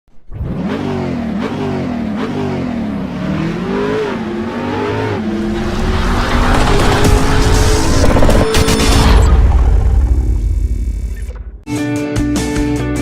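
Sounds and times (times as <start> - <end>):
sports car engine revving: 0.3 - 8.5.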